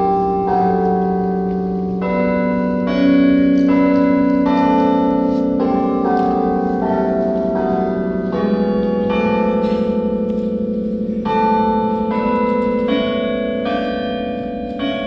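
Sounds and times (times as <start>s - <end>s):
church bells ringing: 0.0s - 15.0s.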